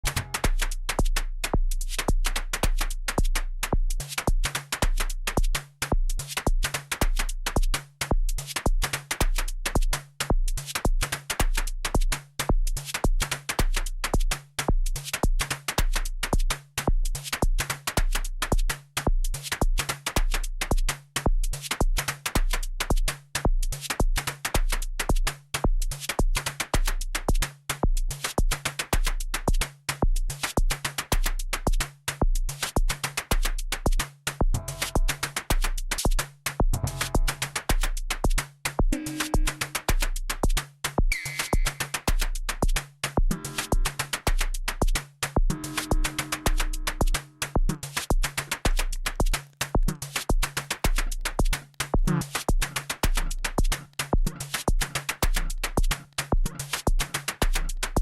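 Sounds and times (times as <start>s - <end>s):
electronic music with drum beat: 0.0s - 0.8s, 34.5s - 58.0s.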